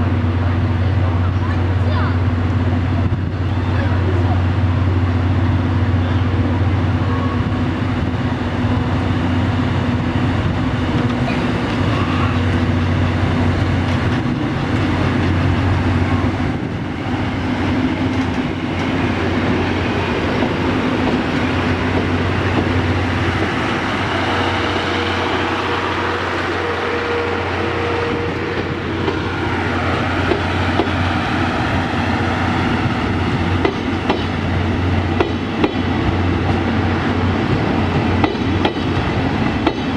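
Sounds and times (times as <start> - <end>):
electric locomotive hum: 0.0 - 39.9
train wheels clattering on rails: 9.8 - 26.5, 27.4 - 39.9.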